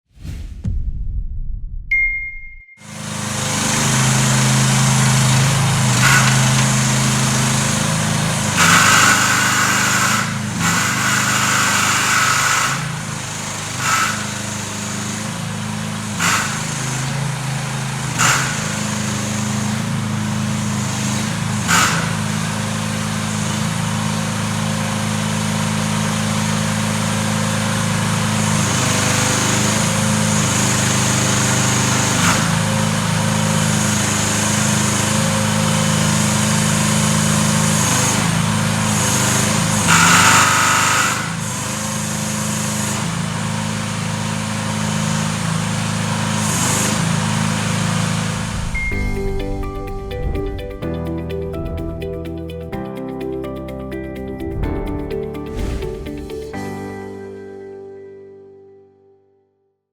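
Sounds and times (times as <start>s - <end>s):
small gasoline engine running: 2.8s - 52.8s
high whine: 48.2s - 57.4s.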